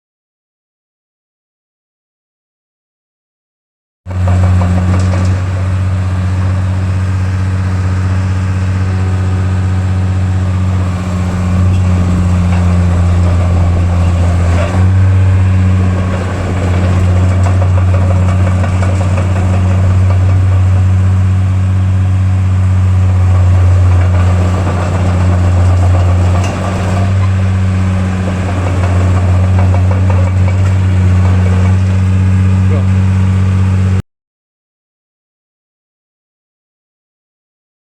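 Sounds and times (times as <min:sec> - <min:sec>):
bulldozer diesel engine running: 0:04.1 - 0:34.0.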